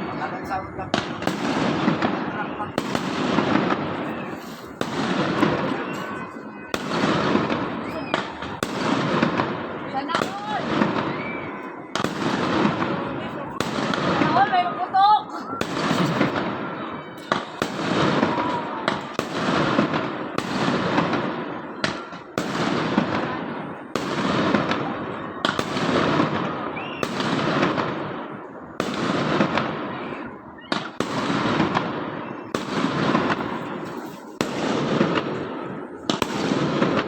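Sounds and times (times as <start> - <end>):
rumbling echo: 0.0 - 5.7
fireworks banging: 0.0 - 37.0.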